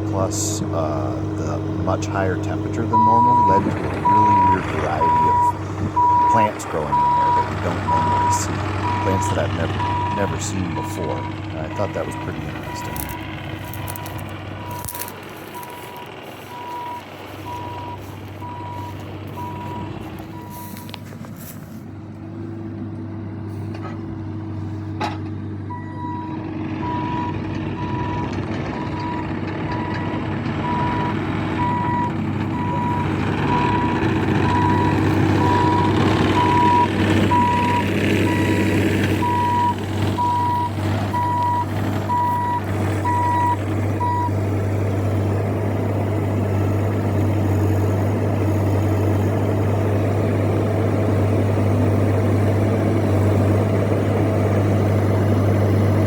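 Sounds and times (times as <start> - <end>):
machine engine running: 0.0 - 25.0, 25.9 - 56.0
back-up alarm beeping: 2.8 - 20.8, 25.7 - 44.4.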